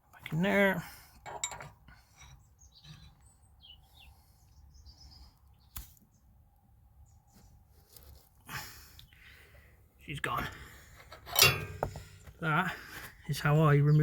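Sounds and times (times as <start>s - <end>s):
faint bird chirps: 2.2s - 6.4s.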